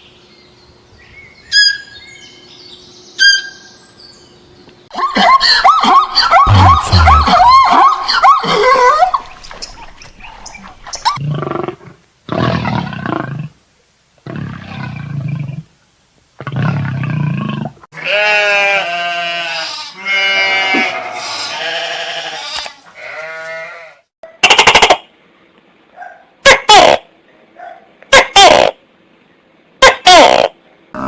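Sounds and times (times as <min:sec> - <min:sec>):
wavering high animal calls: 0:01.5 - 0:02.0, 0:03.2 - 0:03.8.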